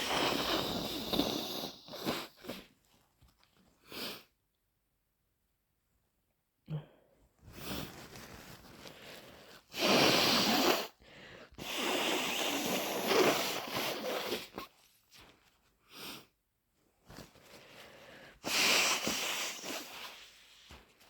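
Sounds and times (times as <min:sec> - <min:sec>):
person blowing nose: 0:00.0 - 0:02.7, 0:07.5 - 0:14.9, 0:17.7 - 0:20.6.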